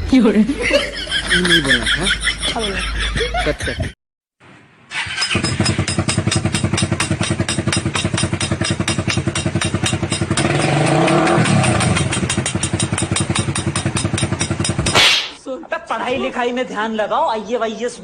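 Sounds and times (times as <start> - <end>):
small engine running: 5.0 - 14.9.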